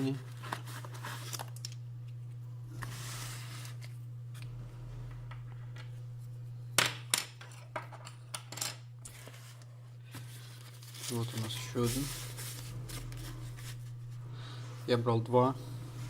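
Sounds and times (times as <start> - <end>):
low electrical hum: 0.0 - 16.0
plastic parts rustling: 7.2 - 13.9.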